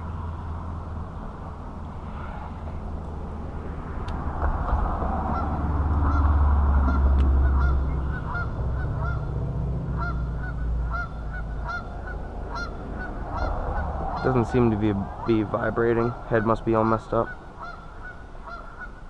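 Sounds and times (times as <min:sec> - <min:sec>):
low rumble: 0:00.0 - 0:18.9
geese honking: 0:05.1 - 0:19.0.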